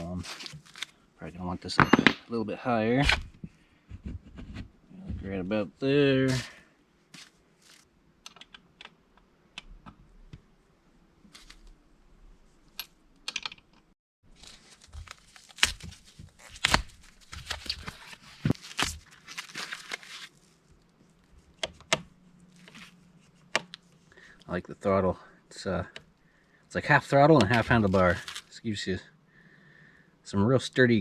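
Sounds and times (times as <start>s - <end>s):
hands clicking and tapping parts: 8.2s - 10.4s, 12.7s - 13.9s.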